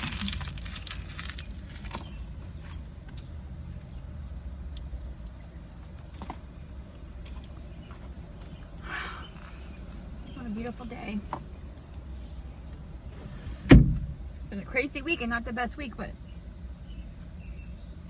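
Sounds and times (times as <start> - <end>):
person chewing: 0.0 - 1.7
car engine idling: 0.0 - 13.1.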